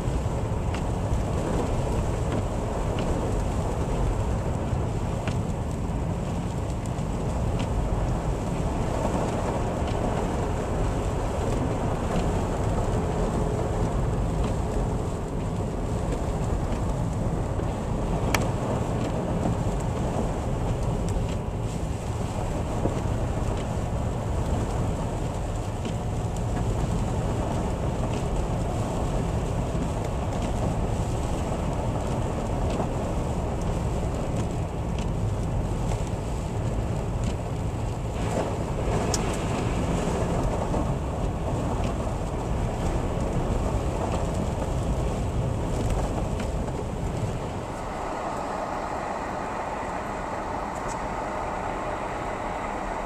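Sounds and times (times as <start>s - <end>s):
vehicle and road rumble: 0.0s - 53.0s.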